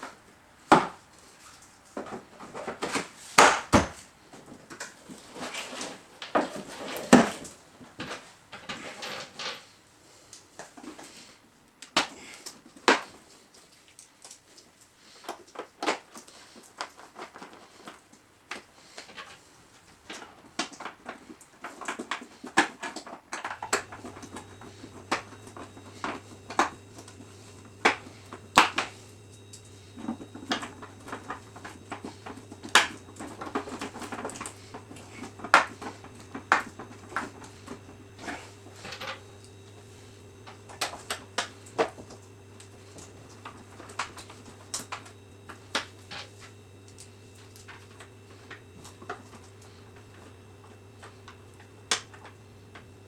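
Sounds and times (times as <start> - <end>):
hard parts clicking and knocking: 15.3 - 53.0
low steady hum: 23.4 - 53.0.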